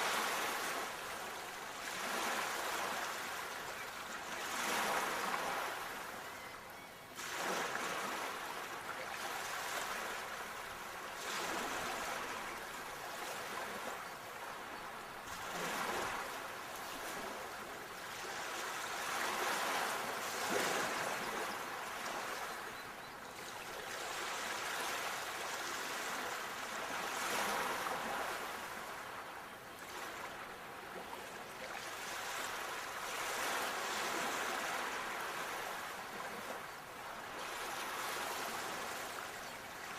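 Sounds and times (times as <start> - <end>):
sea waves washing onto shore: 0.0 - 3.4.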